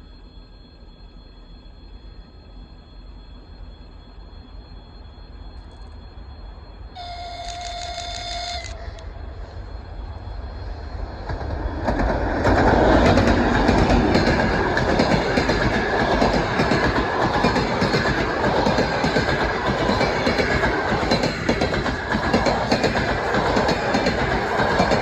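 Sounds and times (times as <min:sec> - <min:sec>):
train rushing past: 0:06.6 - 0:25.0
train horn blast: 0:07.0 - 0:09.2
wheels clacking over rail joints: 0:11.2 - 0:25.0.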